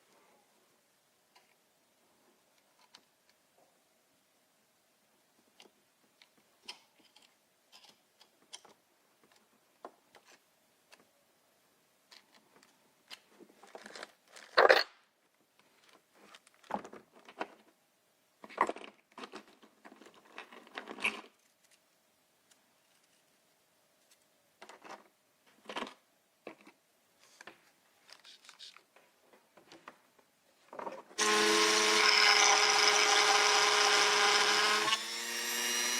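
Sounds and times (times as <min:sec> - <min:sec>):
rustling and crinkling: 0:12.1 - 0:17.8, 0:18.4 - 0:31.2.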